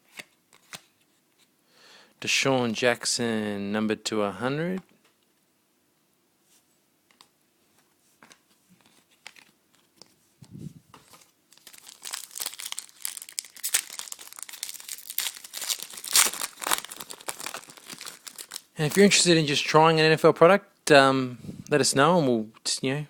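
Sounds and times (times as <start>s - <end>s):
wrapper crinkling and tearing: 11.0s - 19.2s.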